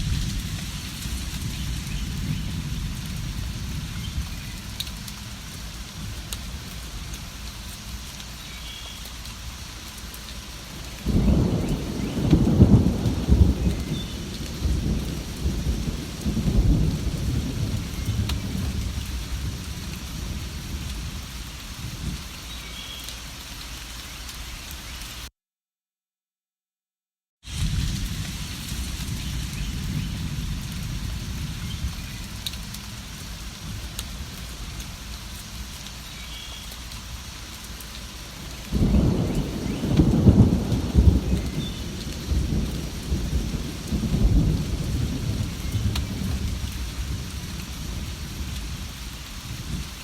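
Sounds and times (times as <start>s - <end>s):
thunder rolling: 0.0s - 7.0s, 11.0s - 21.2s, 27.5s - 34.9s, 38.7s - 48.9s
steady rain falling: 0.0s - 25.3s, 27.4s - 50.0s.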